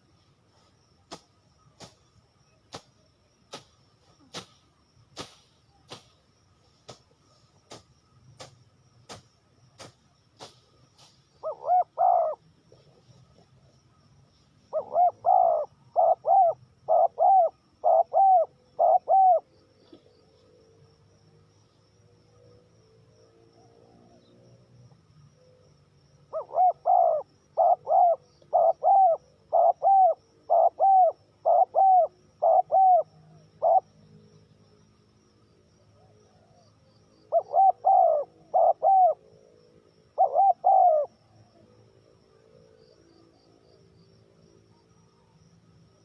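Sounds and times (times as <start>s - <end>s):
dove cooing: 11.4s - 13.1s, 14.7s - 19.5s, 26.3s - 33.9s, 37.3s - 39.2s, 40.1s - 41.2s.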